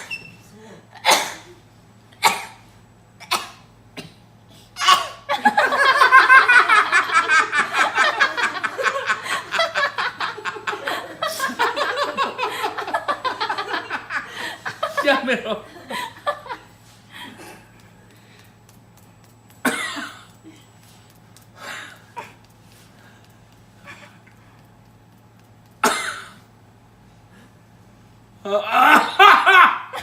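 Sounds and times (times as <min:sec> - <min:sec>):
person laughing hard: 0:05.3 - 0:16.6, 0:28.6 - 0:30.0.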